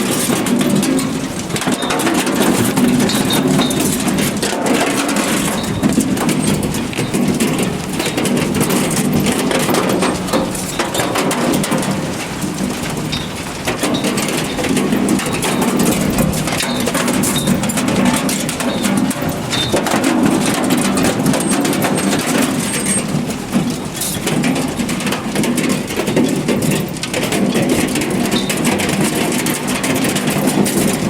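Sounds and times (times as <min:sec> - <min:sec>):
stones and soil rattling: 0:00.0 - 0:23.0
harvester machine running: 0:00.0 - 0:31.0.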